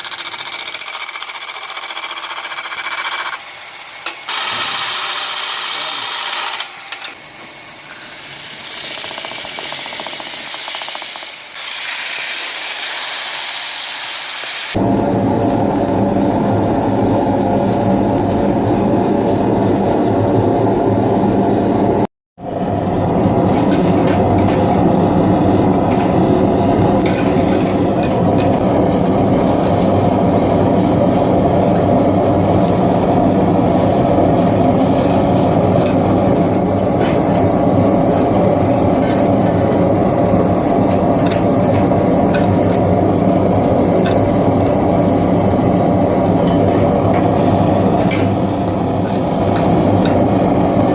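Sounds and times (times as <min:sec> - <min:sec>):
filing metal: 0:00.0 - 0:03.4
machine humming: 0:14.7 - 0:50.9.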